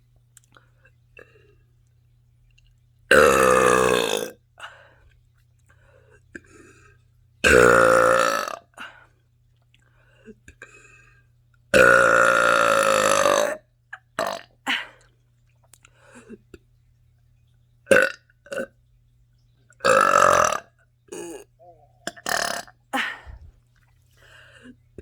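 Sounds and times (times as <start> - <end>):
woman burping: 3.1 - 4.4, 7.4 - 8.9, 11.8 - 13.6, 14.2 - 15.0, 19.8 - 23.5.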